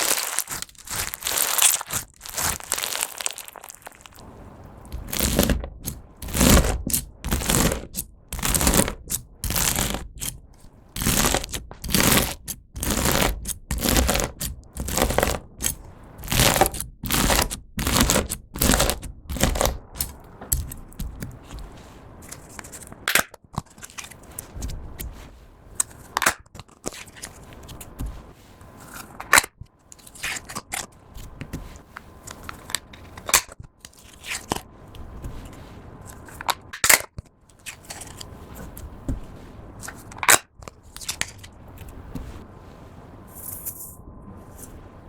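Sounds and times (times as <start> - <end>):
slime crackling and clicking: 0.0 - 4.2.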